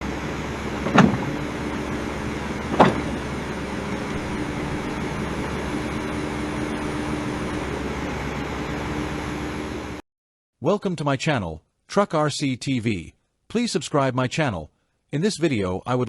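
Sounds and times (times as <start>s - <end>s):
engine running: 0.0s - 10.0s.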